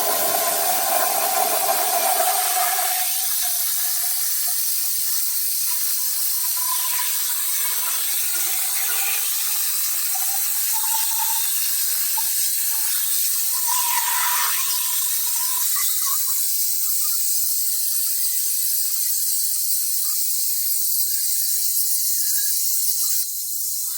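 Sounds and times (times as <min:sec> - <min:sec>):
plasma torch cutting steel: 0:00.0 - 0:16.4.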